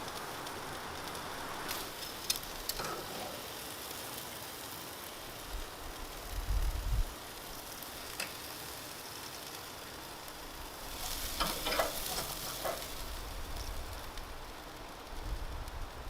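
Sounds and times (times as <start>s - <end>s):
chicken sizzling on a grill: 0.0s - 16.0s
clicks and scrapes at grill: 1.0s - 4.3s, 7.8s - 9.6s, 10.7s - 14.3s.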